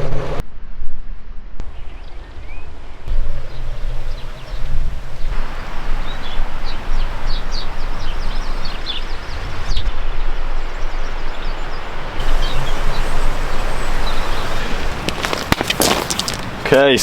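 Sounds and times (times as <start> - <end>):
high bird chirps: 3.1 - 15.5
bike riding rushing noise: 3.1 - 17.0.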